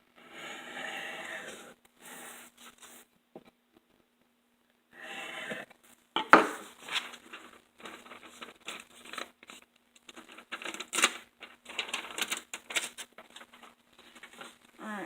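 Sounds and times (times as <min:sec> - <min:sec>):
paper rustling: 0:06.3 - 0:14.8.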